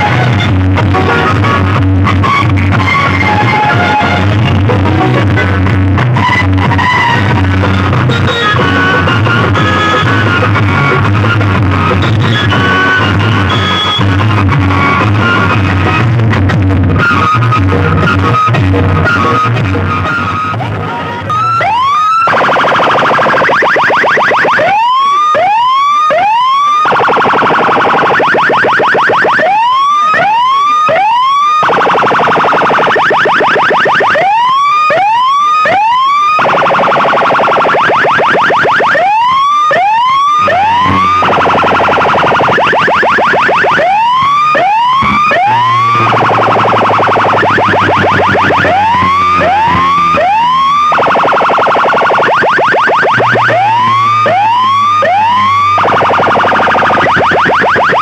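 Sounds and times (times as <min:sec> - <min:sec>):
rising siren swoops: 0:00.0 - 0:16.1, 0:16.9 - 0:58.0
fast buzzing pulses: 0:31.5 - 0:58.0
deep steady hum: 0:53.2 - 0:57.3.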